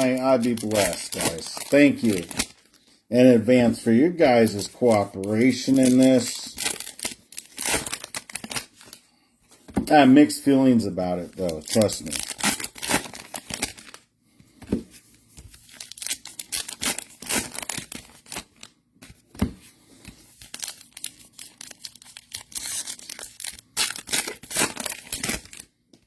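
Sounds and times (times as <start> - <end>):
foil wrappers tearing and crinkling: 0.0 - 2.8, 4.2 - 9.0, 11.3 - 14.0, 15.5 - 18.7, 20.2 - 25.8.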